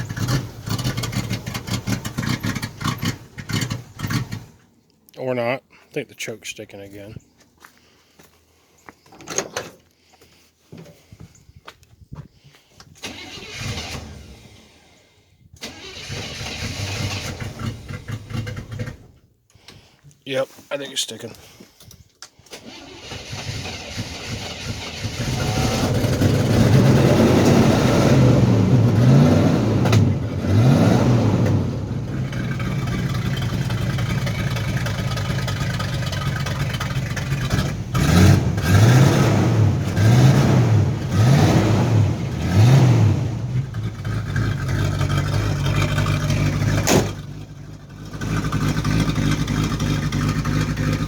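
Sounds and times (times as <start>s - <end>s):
car engine revving: 0.0s - 4.6s, 15.6s - 19.1s, 22.7s - 51.0s.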